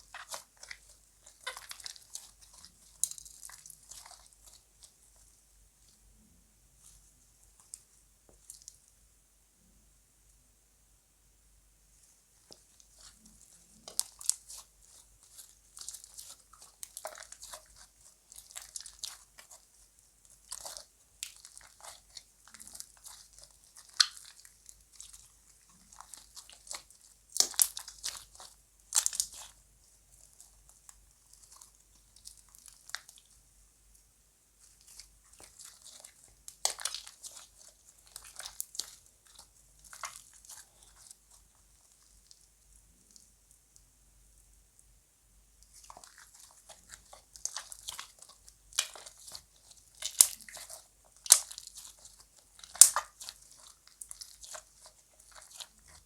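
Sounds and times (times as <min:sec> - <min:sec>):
slime squeezed crackling: 0:00.0 - 0:05.3, 0:12.4 - 0:33.4, 0:34.6 - 0:43.3, 0:45.6 - 0:56.0.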